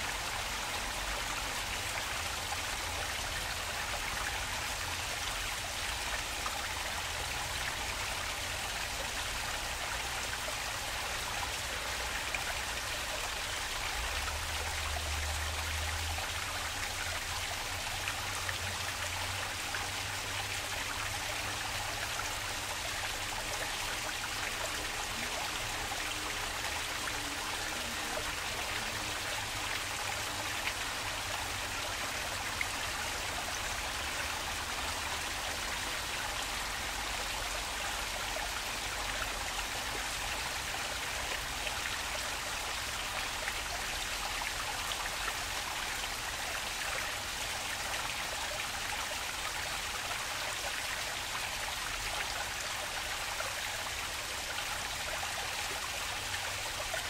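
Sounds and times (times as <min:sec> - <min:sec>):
water flowing in a stream: 0:00.0 - 0:57.0.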